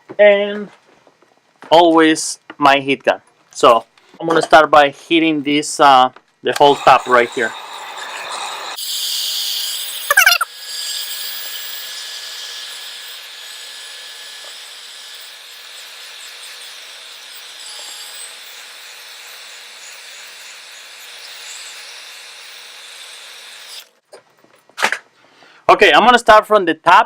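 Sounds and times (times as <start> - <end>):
heat gun blowing air: 6.6 - 11.8.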